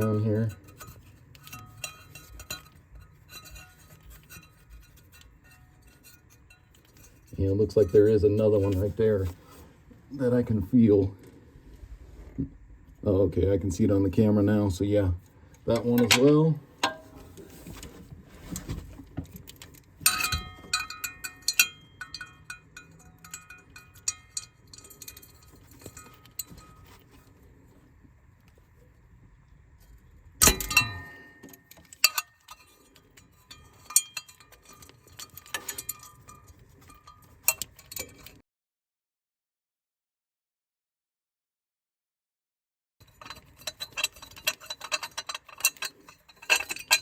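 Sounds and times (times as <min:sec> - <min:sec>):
hand tools clinking on metal: 0:00.0 - 0:09.4, 0:15.7 - 0:17.2, 0:18.5 - 0:27.4, 0:30.4 - 0:38.4, 0:43.0 - 0:47.0.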